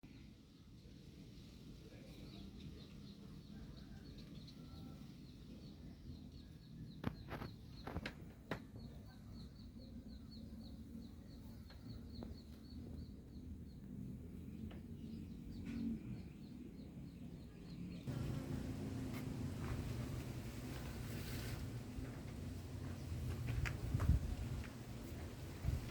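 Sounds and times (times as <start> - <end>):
low steady rumble: 9.8 - 25.9.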